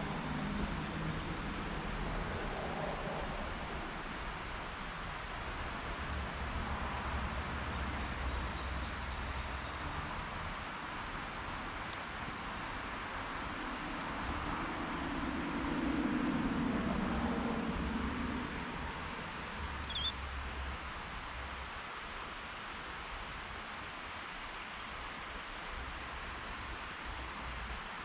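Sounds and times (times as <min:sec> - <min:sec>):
faint high chirp: 0:19.8 - 0:20.2.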